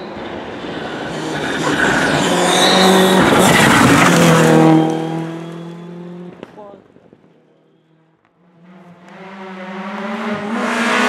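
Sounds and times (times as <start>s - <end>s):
rally car passing at speed: 0.0s - 6.6s, 8.4s - 11.0s
tyre squeal: 1.1s - 6.1s.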